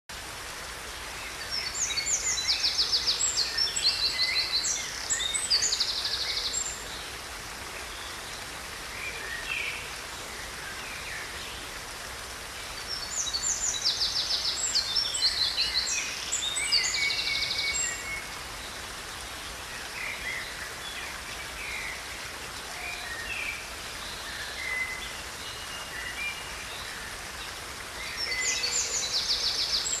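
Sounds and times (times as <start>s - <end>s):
waterfall rushing: 0.1s - 30.0s.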